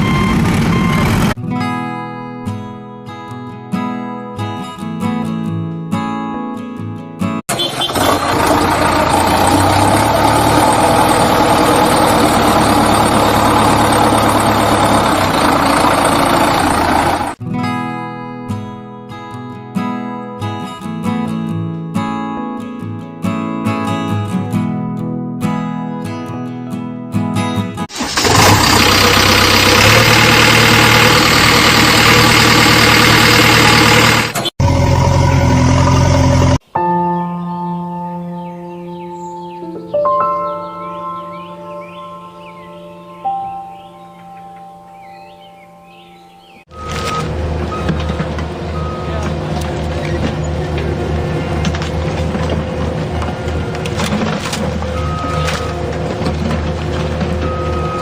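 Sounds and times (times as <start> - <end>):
engine running with low hum: 0.0 - 1.4, 7.5 - 17.4, 27.9 - 36.6, 46.7 - 58.0.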